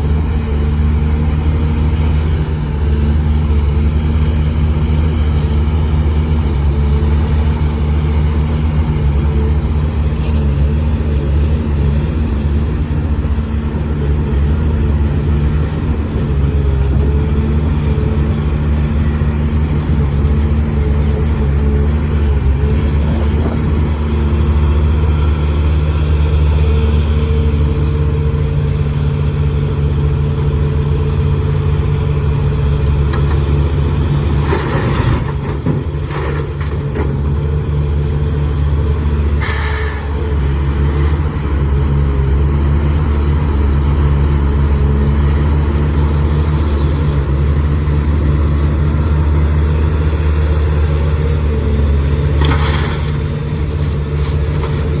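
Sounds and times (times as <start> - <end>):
diesel engine droning: 0.0 - 55.0
short hisses: 39.4 - 40.2.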